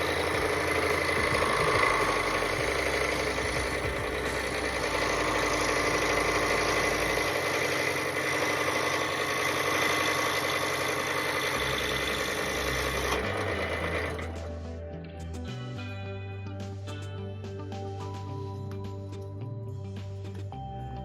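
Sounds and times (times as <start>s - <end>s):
scroll saw cutting wood: 0.0s - 14.4s.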